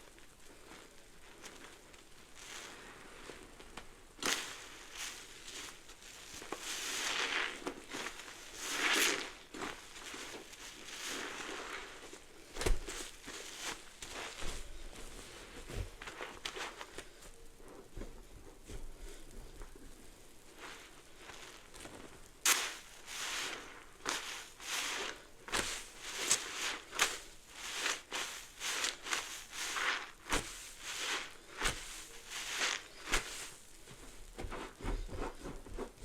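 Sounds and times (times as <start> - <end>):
foam crackling: 0.0 - 17.2, 19.9 - 34.6
soapy sponge squelching: 22.5 - 33.6.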